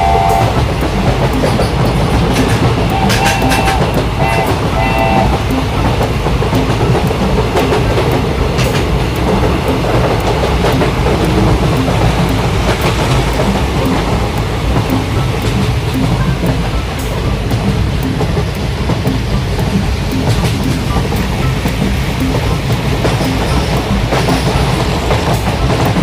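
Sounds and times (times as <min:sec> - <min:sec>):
short pitched tones: 0:00.0 - 0:01.4, 0:02.4 - 0:05.8
clickety-clack of wheels: 0:00.0 - 0:26.0
train rumbling on rails: 0:00.0 - 0:26.0.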